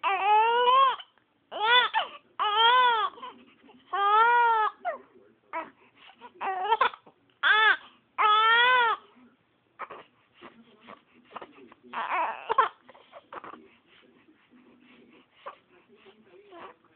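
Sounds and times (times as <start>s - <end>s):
baby crying: 0.0s - 9.0s, 9.8s - 10.1s, 11.4s - 13.6s.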